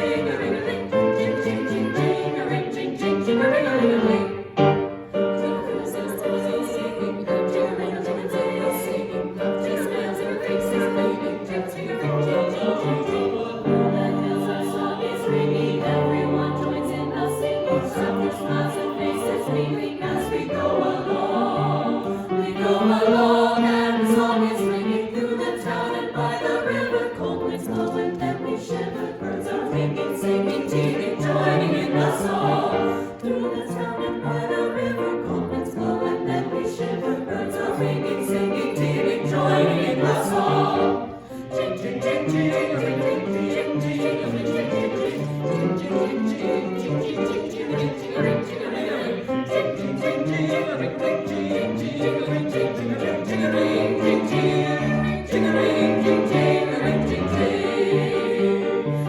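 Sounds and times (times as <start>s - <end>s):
choir singing: 0.0s - 59.0s.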